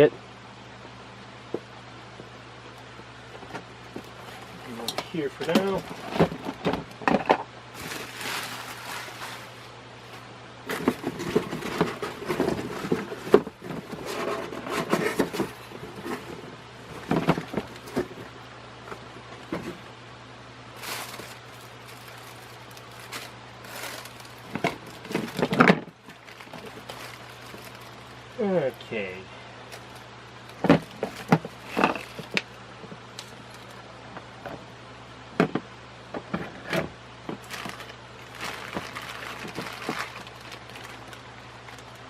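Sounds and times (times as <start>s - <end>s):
steady low hum: 0.0s - 42.0s
plastic and cardboard rustling: 3.4s - 19.9s, 20.8s - 28.9s, 29.7s - 33.8s, 37.3s - 42.0s.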